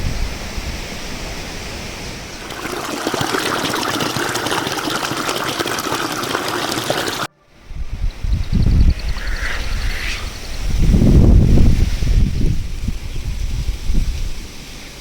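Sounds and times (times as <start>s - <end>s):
stream trickling and splashing: 2.1s - 7.3s
low rush: 8.6s - 11.8s.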